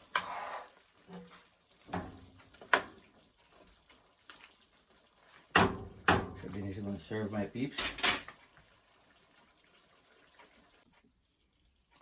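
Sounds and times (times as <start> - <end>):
pot scraping: 0.0 - 2.1.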